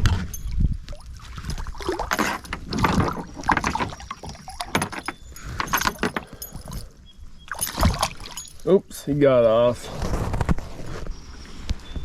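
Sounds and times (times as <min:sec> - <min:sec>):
water splashing: 0:00.8 - 0:05.1, 0:07.5 - 0:08.7.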